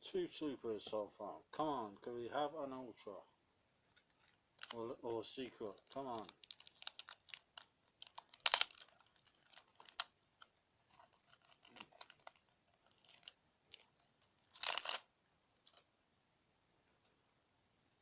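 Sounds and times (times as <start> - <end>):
cards clicking and rustling: 3.9 - 15.8
foil crinkling: 4.0 - 15.8.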